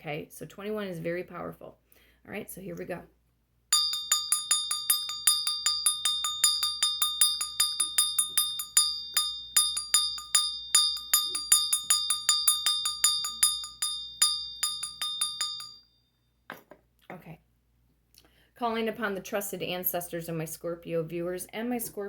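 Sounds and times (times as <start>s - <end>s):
metal hand bell ringing: 3.7s - 15.9s.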